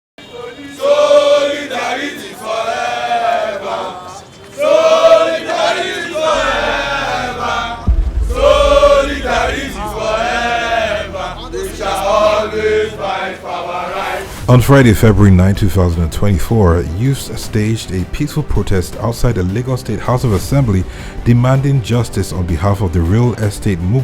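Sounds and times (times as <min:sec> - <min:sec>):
crowd chanting: 0:00.2 - 0:14.4
low rumble: 0:06.4 - 0:13.2.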